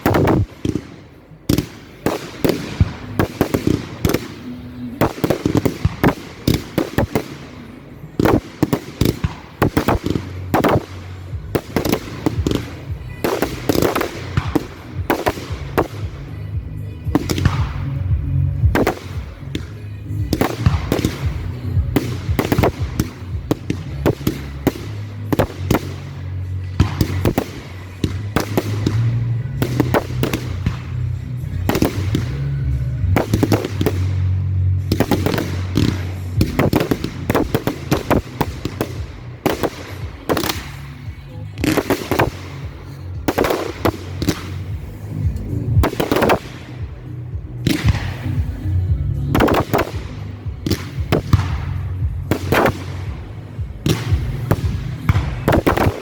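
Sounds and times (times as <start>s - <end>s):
firework bangs and crackles: 0.0s - 56.0s
music playing: 0.0s - 56.0s.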